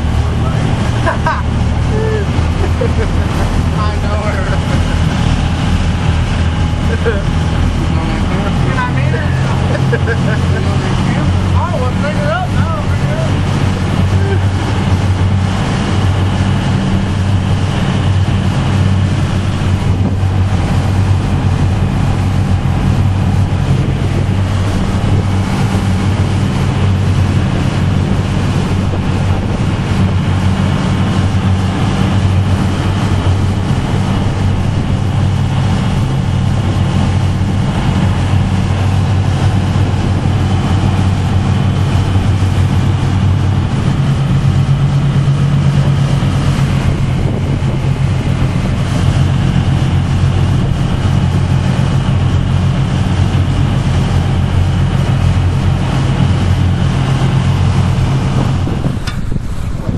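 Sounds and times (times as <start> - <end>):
boat engine humming: 0.0 - 59.9
water rushing: 0.0 - 59.9
wind on microphone: 0.0 - 59.9.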